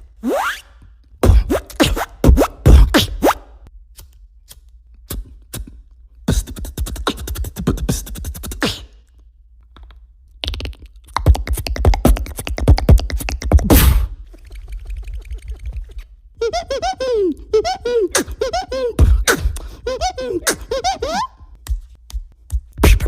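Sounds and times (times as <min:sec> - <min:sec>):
beatbox mouth clicks: 0:04.0 - 0:16.1, 0:17.0 - 0:23.0.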